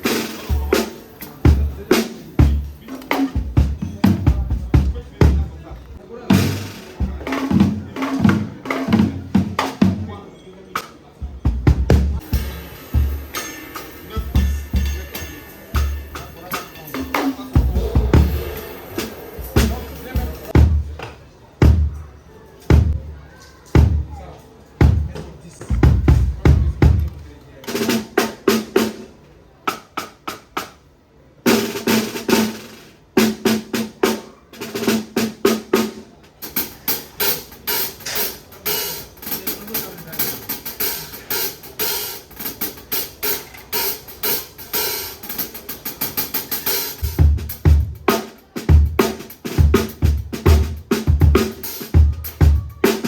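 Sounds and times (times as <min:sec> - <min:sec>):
drum kit strokes: 0:00.0 - 0:10.2, 0:11.2 - 0:21.0, 0:22.6 - 0:23.2, 0:24.8 - 0:29.2, 0:31.5 - 0:53.0.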